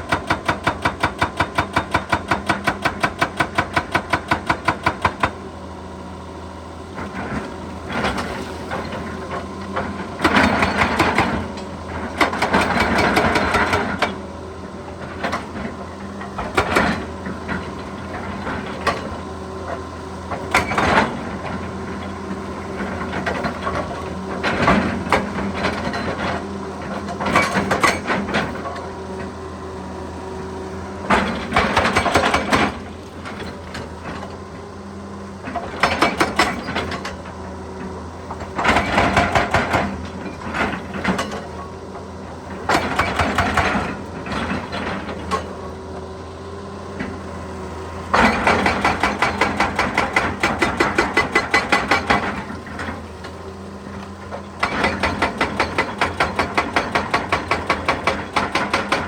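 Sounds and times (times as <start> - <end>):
hydraulic breaker hammer pounding: 0.0 - 5.6, 7.0 - 14.3, 14.9 - 29.4, 31.0 - 34.5, 35.4 - 37.4, 38.3 - 45.8, 47.9 - 59.0
excavator engine running: 0.0 - 59.0
clanks and crunches of rock: 48.0 - 59.0.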